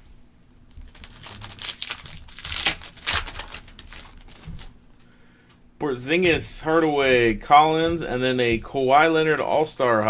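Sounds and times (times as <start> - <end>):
foil wrapper crinkling: 0.7 - 5.2, 9.1 - 10.0.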